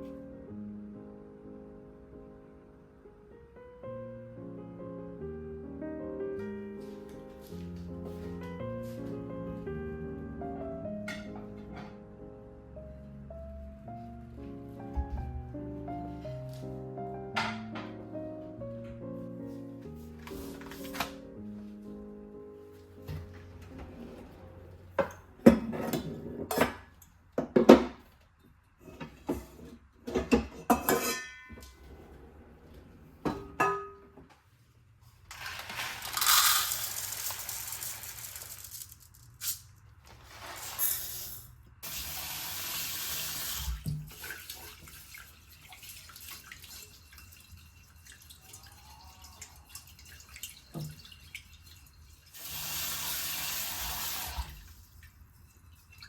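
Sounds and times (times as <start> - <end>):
kitchenware clinking: 17.4 - 18.0, 25.0 - 28.0, 28.8 - 32.0, 33.2 - 34.2
kitchen tap running: 36.0 - 38.9, 41.0 - 56.0.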